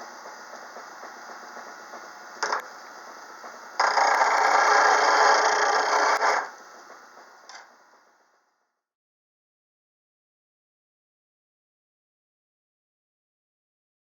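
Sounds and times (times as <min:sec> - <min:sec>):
bench grinder running: 0:03.8 - 0:06.5
tool grinding on wheel: 0:03.8 - 0:06.5.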